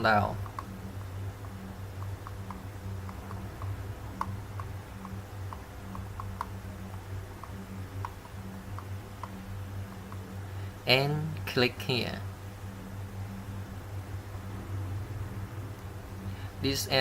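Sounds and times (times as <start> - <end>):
light irregular ticks: 0.0 - 10.4
steady low hum: 0.0 - 17.0.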